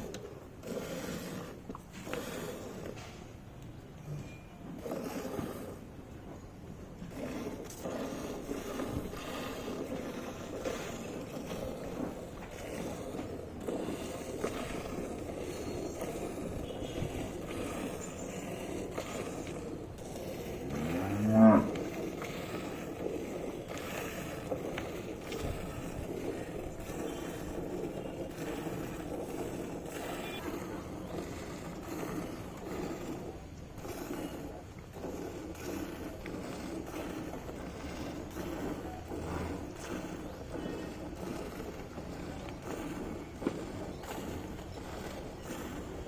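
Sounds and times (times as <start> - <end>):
farmyard background noise: 0.0 - 46.0
cow mooing: 20.6 - 21.8.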